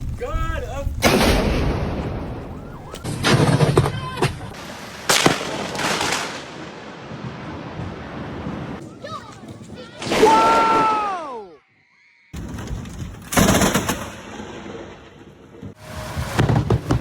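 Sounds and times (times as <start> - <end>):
thunder cracking and rumbling: 0.0 - 4.5, 5.4 - 8.9.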